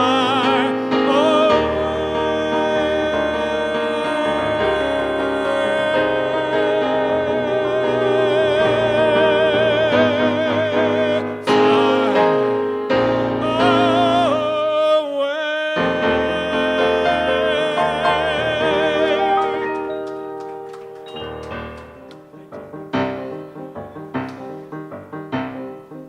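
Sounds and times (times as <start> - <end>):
man singing with vibrato: 0.0 - 20.4
piano chords: 0.0 - 26.0.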